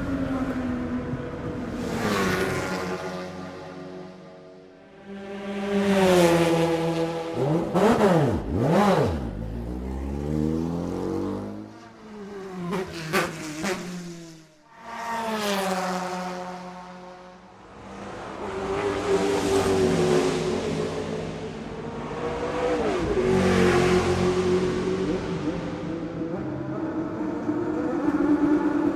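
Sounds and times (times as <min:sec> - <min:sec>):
stock car engine passing: 0:00.0 - 0:17.2
race cars passing by: 0:00.0 - 0:28.9
race car engine revving: 0:05.0 - 0:14.4.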